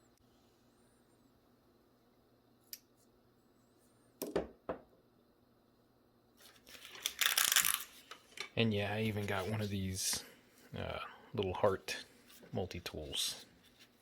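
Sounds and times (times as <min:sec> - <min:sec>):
rustling scraping handling noise: 0:06.4 - 0:10.7, 0:12.1 - 0:14.0.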